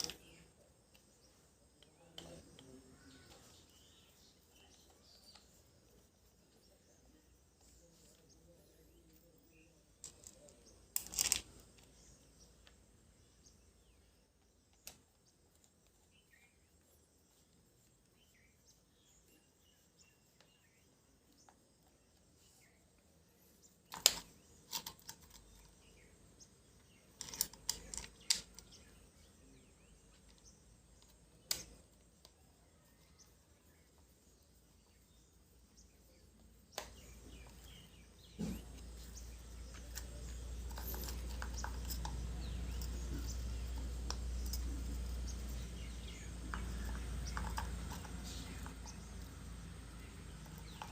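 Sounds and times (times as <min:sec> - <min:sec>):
sharp clicks and knocks: 0:23.9 - 0:29.0, 0:30.1 - 0:32.4, 0:36.7 - 0:50.9.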